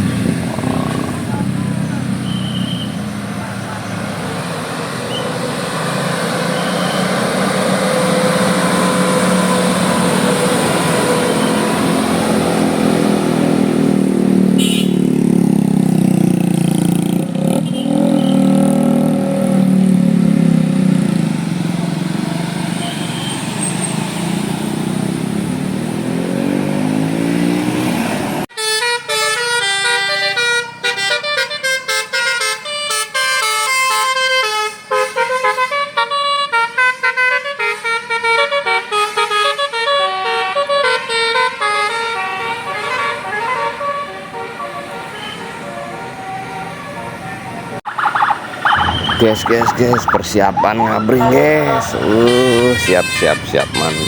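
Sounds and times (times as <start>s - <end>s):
bus engine and road noise: 0.0s - 54.0s
bus horn: 2.2s - 3.0s, 8.3s - 12.4s, 14.5s - 15.1s, 17.5s - 18.6s, 22.8s - 24.0s, 28.5s - 47.7s, 51.2s - 54.0s
multi-tone bus horn tune: 6.6s - 12.8s, 14.5s - 15.1s, 17.5s - 18.6s, 28.5s - 49.5s, 51.2s - 54.0s.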